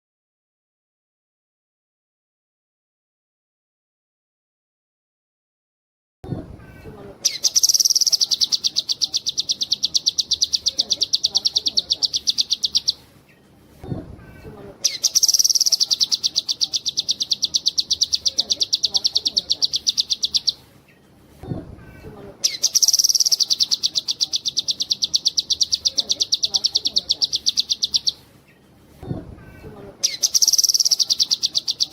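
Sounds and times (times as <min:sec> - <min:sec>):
songbird trilling: 0:07.2 - 0:13.0, 0:14.8 - 0:20.6, 0:22.4 - 0:28.2, 0:30.0 - 0:31.9.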